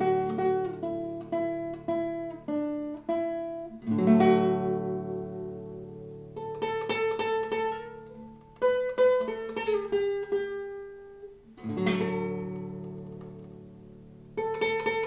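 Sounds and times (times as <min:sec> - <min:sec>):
nylon-string guitar fingerstyle: 0:00.0 - 0:15.0.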